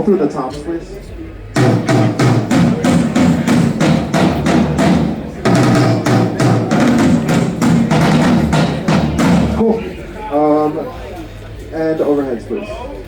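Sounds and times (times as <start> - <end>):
drum toms struck: 1.6 - 9.9.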